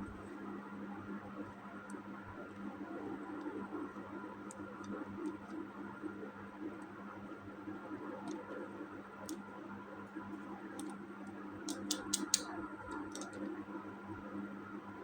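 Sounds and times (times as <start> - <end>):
plastic toy parts clicking: 10.8 - 11.0, 11.7 - 13.5.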